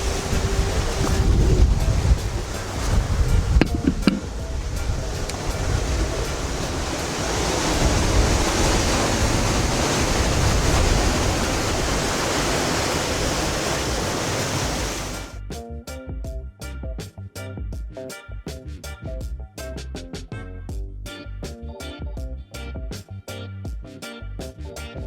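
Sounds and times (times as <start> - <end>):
background music with a beat: 0.0 - 7.9, 15.3 - 25.0
ocean surf: 0.0 - 15.4
wind rumbling on microphone: 0.0 - 15.5.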